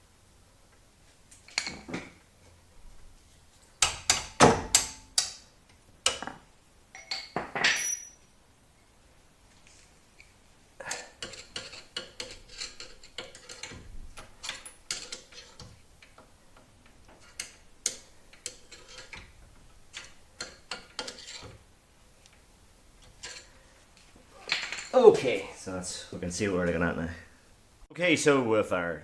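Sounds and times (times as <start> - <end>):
hand tools clinking on steel: 6.9 - 8.3.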